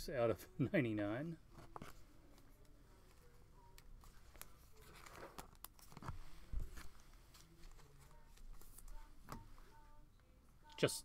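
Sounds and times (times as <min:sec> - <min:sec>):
card wrappers crinkling: 0:01.6 - 0:09.1.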